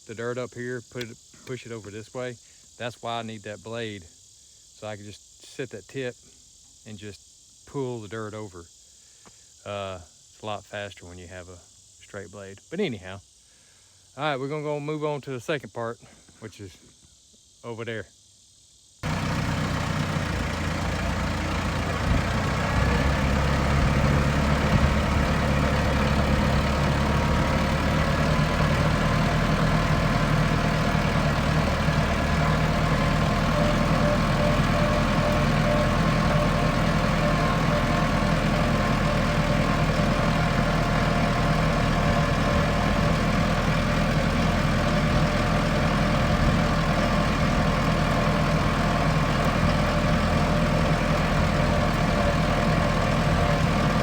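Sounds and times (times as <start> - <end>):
tractor engine running: 19.0 - 54.0.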